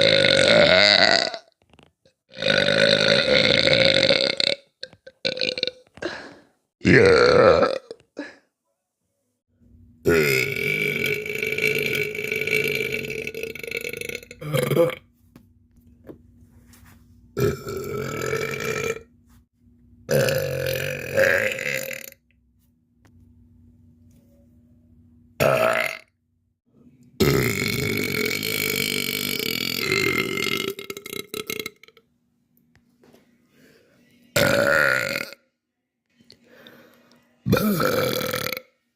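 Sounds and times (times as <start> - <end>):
girl burping: 10.1 - 15.0, 37.5 - 38.6.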